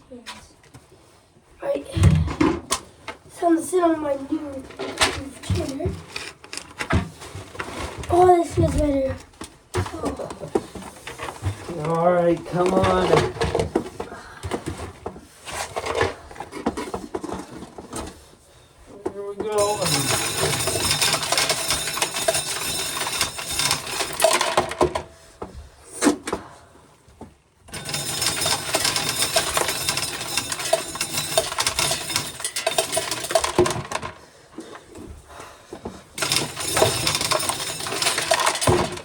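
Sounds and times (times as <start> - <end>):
corn sheller clattering: 11.1 - 13.8, 19.3 - 25.1, 27.7 - 34.8, 36.2 - 39.0.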